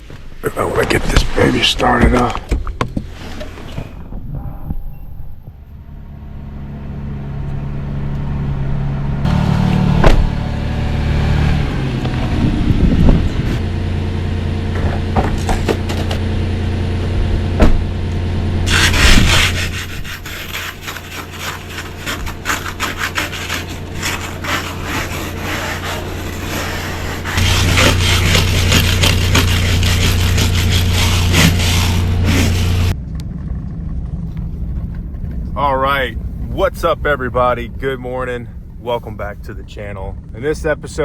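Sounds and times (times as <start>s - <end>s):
vehicle engine idling: 5.2s - 41.0s
rapid rhythmic scraping: 18.7s - 32.9s.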